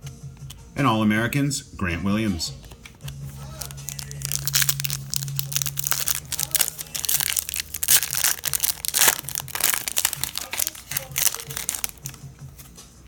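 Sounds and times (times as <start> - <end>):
foil wrapper crinkling: 3.5 - 12.2.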